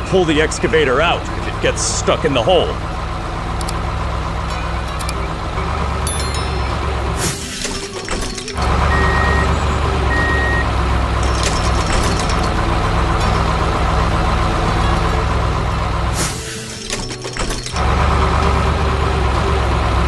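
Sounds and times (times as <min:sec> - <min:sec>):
heavy vehicle engine rumbling: 0:00.0 - 0:20.0
reversing beeps: 0:08.8 - 0:10.7.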